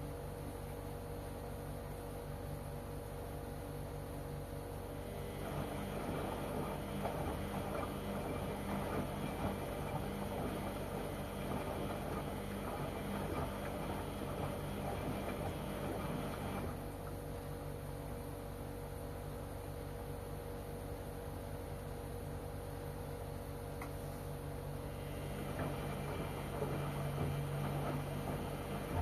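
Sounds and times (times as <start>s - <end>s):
steady hum: 0.0s - 29.0s
washing machine drum churning: 5.0s - 17.3s, 24.8s - 29.0s.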